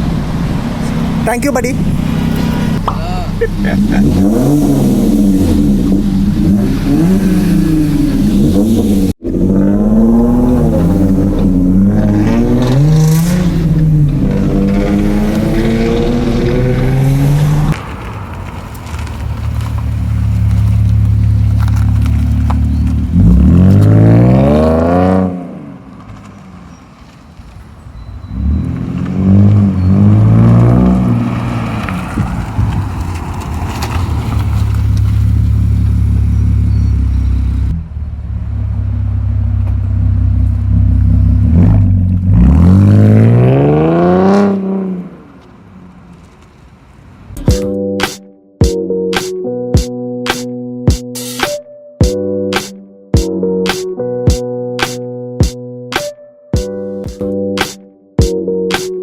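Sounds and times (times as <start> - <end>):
car engine revving: 0.0 - 26.2, 28.3 - 46.0.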